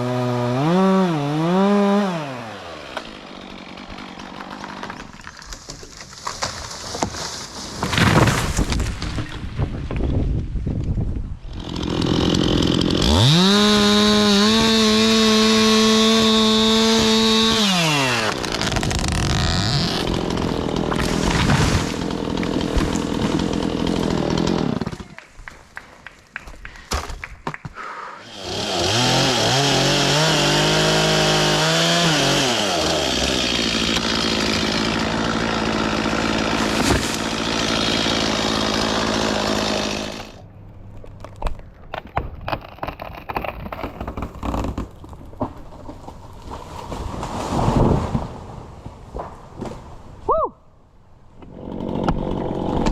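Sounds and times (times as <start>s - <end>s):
chainsaw revving: 0.0s - 4.9s, 11.5s - 25.2s, 28.2s - 40.4s, 51.4s - 52.9s.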